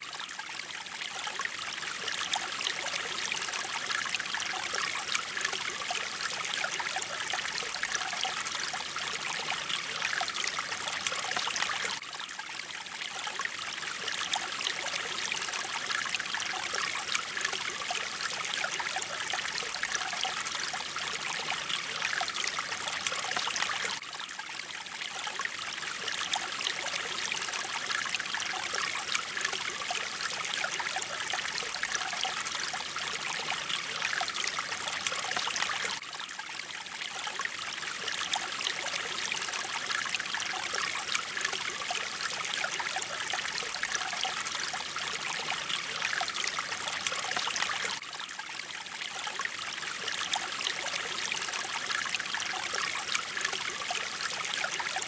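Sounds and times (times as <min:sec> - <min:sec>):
stream water flowing and splashing: 0:00.0 - 0:55.0.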